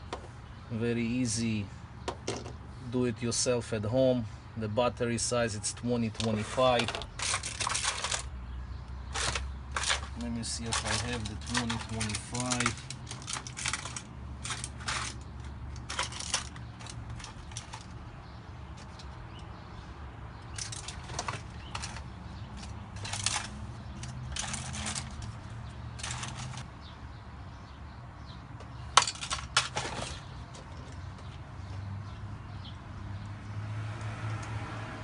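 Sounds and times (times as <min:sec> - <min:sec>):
batteries and key fob clinking: 0:09.1 - 0:18.0, 0:20.4 - 0:26.7.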